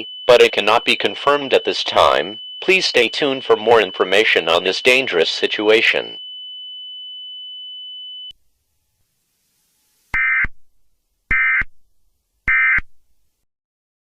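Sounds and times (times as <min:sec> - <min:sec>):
digital data tone bursts: 0:00.0 - 0:06.2
steady high-pitched tone: 0:00.0 - 0:06.2.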